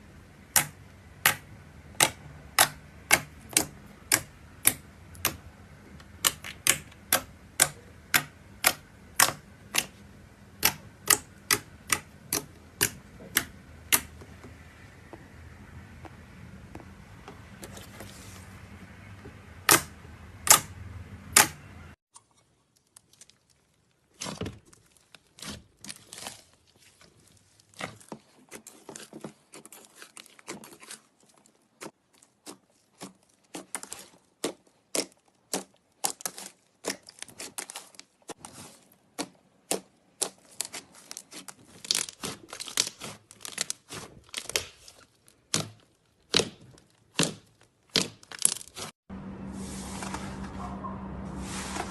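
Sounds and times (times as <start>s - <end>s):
slime crackling and popping: 39.2s - 48.9s.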